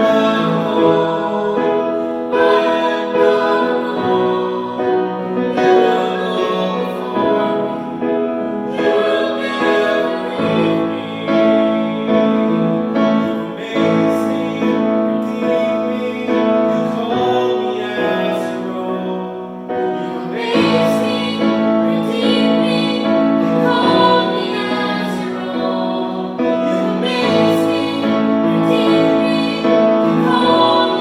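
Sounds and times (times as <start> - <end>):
church singing: 0.0 - 31.0
piano accompaniment: 0.0 - 31.0.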